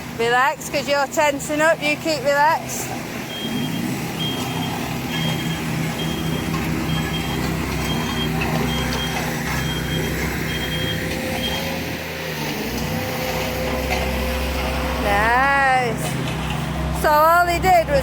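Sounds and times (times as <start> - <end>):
road roller engine running: 0.0 - 18.0
reversing alarm beeping: 3.3 - 11.9.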